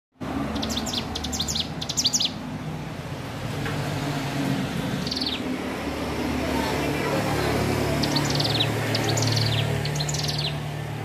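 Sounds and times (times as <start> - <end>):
bird chirps: 0.5 - 2.4, 5.0 - 5.5, 7.9 - 10.7.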